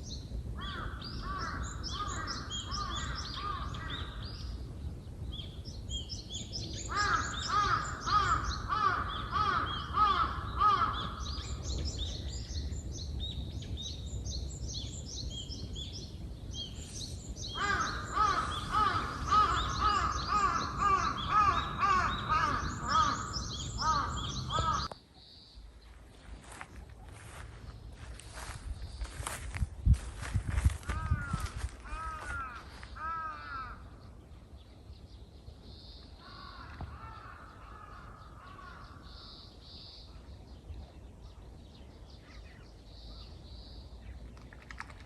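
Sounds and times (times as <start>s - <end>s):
small birds chirping: 0.0s - 45.0s
bird loud repeated calls: 6.8s - 11.6s, 17.5s - 25.0s.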